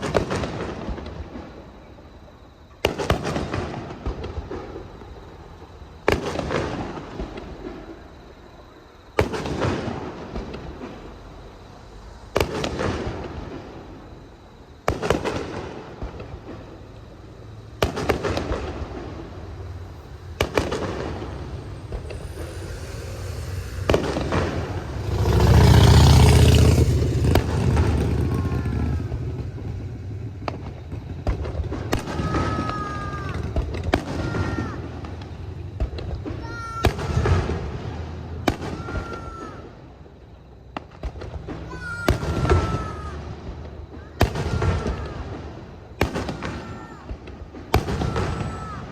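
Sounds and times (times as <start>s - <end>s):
firework shells bursting: 14.8s - 37.6s
heavy rumble: 17.2s - 32.0s.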